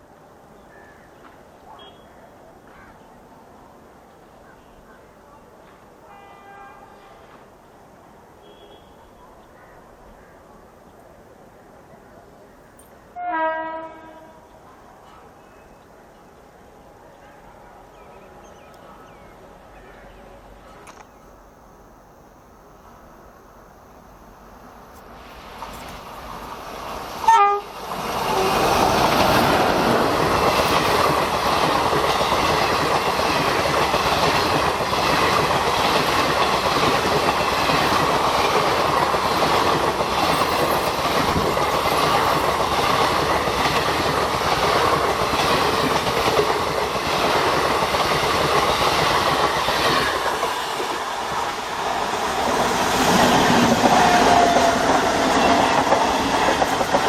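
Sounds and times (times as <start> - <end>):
locomotive passing with falling tone: 22.8 - 57.0
wheels clacking over rail joints: 27.8 - 57.0.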